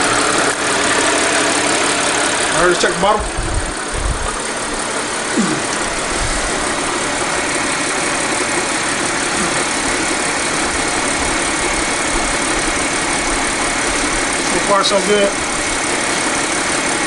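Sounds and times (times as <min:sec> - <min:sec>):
car engine idling: 0:00.0 - 0:17.0.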